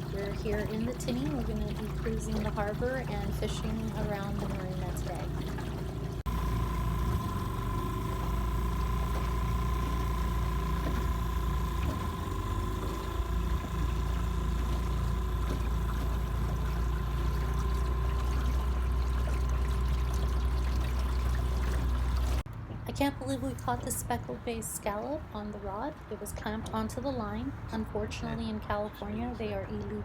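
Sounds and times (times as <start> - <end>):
outboard motor running: 0.0 - 22.5, 23.3 - 24.2.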